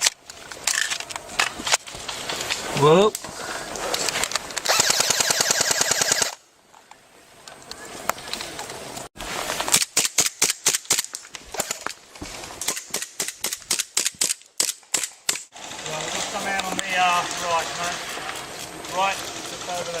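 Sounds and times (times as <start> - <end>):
airsoft gun firing: 4.7 - 6.4.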